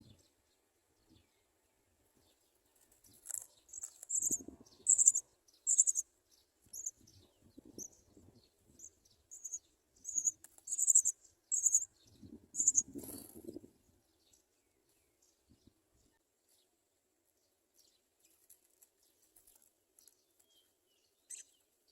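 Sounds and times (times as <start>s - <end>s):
chicks begging chirps: 3.7s - 6.0s, 9.3s - 12.0s, 12.6s - 13.2s.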